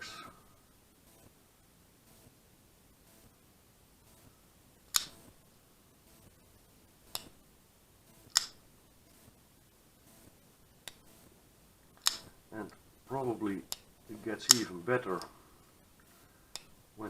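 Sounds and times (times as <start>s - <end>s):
folding knife metallic clicks: 4.9s - 5.2s, 8.3s - 8.6s, 12.0s - 12.3s.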